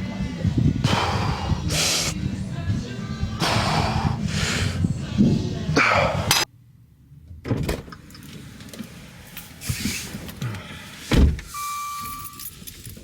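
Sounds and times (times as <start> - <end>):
heavy panting breaths: 0.8 - 2.2, 3.4 - 5.0
car door shutting: 11.1 - 12.3
steady beep tone: 11.5 - 12.4.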